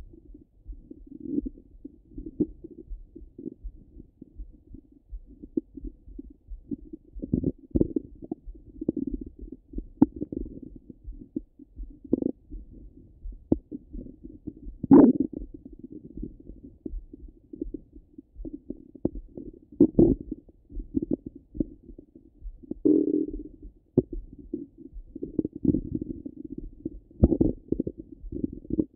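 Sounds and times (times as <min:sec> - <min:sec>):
stomach gurgling: 0:06.7 - 0:11.4, 0:12.0 - 0:12.6, 0:13.5 - 0:22.0, 0:22.6 - 0:28.9.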